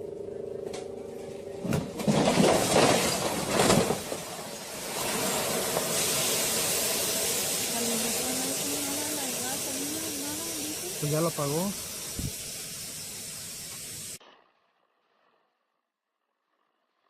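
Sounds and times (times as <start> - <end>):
heavy machine engine hum: 0.0 - 14.1
loud crashing and crunching: 1.6 - 7.5
steady hiss: 4.2 - 14.2.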